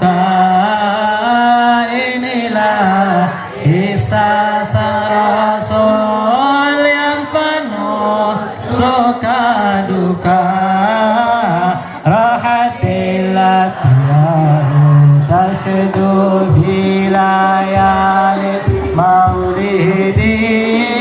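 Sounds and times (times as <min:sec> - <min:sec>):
person singing devotional song: 0:00.0 - 0:21.0
sharp beats: 0:13.7 - 0:21.0.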